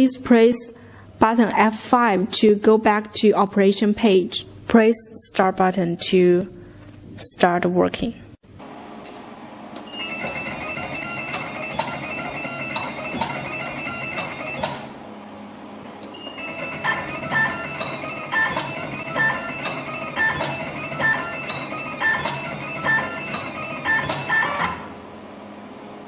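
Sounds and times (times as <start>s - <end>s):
machine clicks and chirps: 9.8s - 14.9s, 16.0s - 24.9s.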